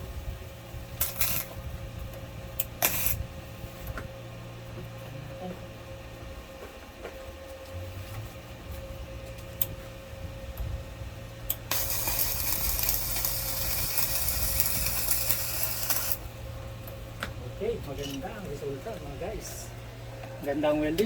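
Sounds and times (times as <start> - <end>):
low steady hum: 0.0 - 21.0
welding arc crackling hiss: 0.9 - 1.6, 2.6 - 3.2, 11.5 - 16.4.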